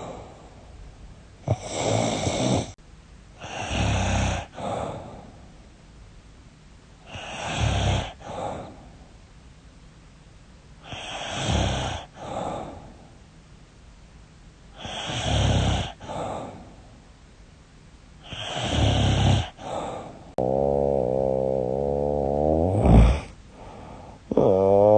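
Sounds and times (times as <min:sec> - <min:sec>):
woman snoring loudly: 0:01.5 - 0:02.8, 0:03.4 - 0:04.8, 0:07.1 - 0:08.2, 0:10.9 - 0:12.2, 0:14.8 - 0:16.0, 0:18.3 - 0:19.7, 0:20.4 - 0:23.4, 0:24.3 - 0:24.9.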